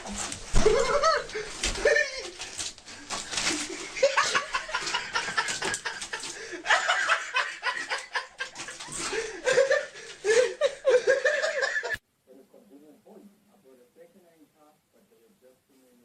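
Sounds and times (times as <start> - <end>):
people laughing: 0.6 - 2.4, 3.5 - 12.0.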